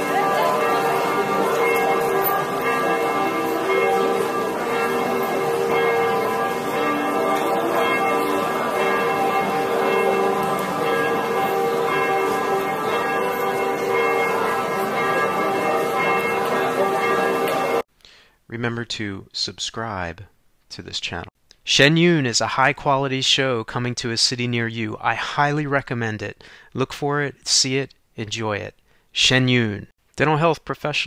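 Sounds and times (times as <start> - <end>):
church bells ringing: 0.0 - 17.8.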